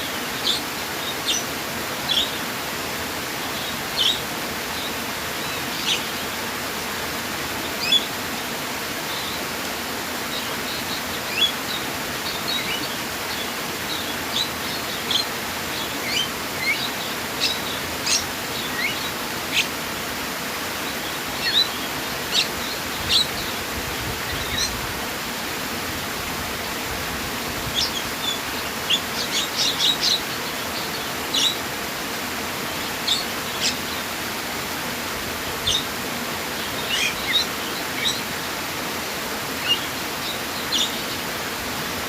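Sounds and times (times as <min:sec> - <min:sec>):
small birds chirping: 0:00.0 - 0:02.6, 0:03.4 - 0:06.4, 0:07.6 - 0:08.2, 0:10.2 - 0:19.8, 0:20.7 - 0:24.8, 0:27.6 - 0:31.7, 0:32.6 - 0:34.2, 0:35.5 - 0:38.4, 0:39.5 - 0:41.2
flowing water: 0:00.0 - 0:42.0.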